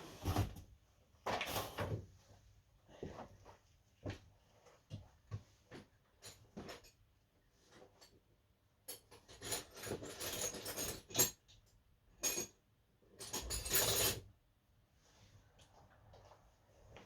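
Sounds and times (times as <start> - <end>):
metal tools clinking and rattling: 8.9 - 11.6, 12.2 - 12.6, 13.2 - 14.2.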